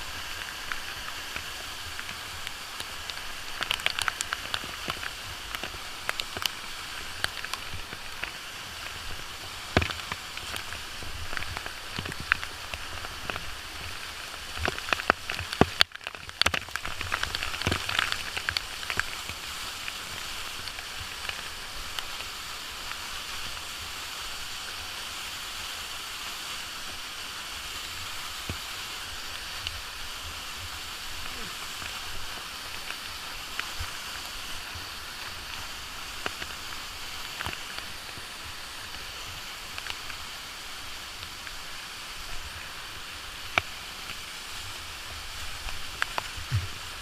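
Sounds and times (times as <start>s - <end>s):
water drips and splashes: 0.0s - 47.0s
waterfall rushing: 0.0s - 47.0s.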